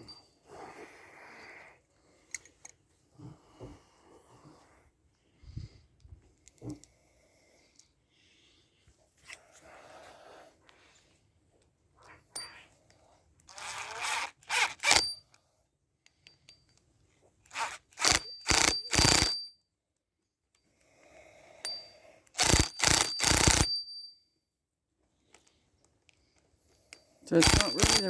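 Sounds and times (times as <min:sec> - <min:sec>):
metal parts clinking and scraping: 0:13.5 - 0:15.2, 0:17.5 - 0:19.4, 0:27.3 - 0:28.0.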